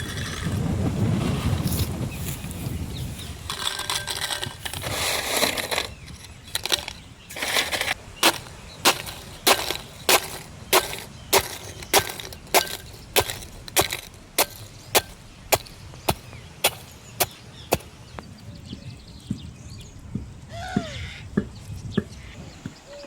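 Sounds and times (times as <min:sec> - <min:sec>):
food being pounded by hand: 0:08.2 - 0:17.9.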